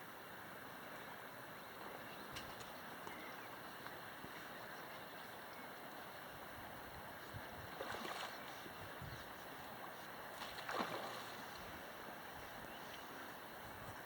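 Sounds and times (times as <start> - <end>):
river water running: 0.0 - 14.0
water splashes: 7.3 - 13.1.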